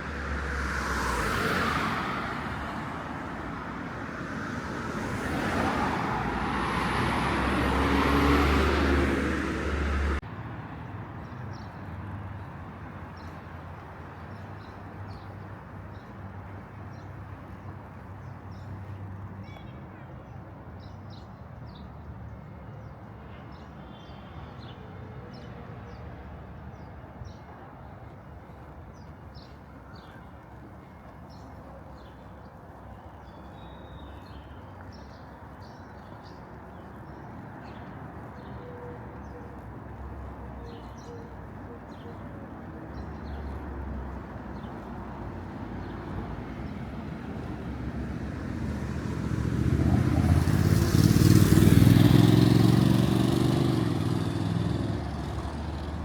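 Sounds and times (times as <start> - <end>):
vehicle engine rumble passing: 0.0 - 10.2, 44.9 - 56.0.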